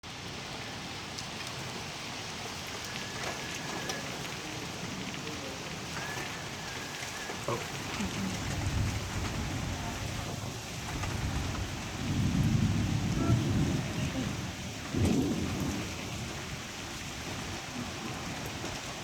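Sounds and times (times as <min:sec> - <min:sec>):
heavy rain hissing: 0:00.0 - 0:19.0.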